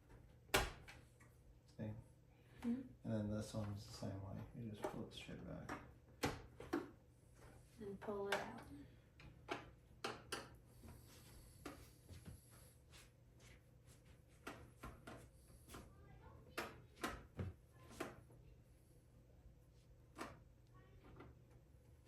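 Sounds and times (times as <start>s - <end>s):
clicks and taps on computer case: 8.3s - 10.6s.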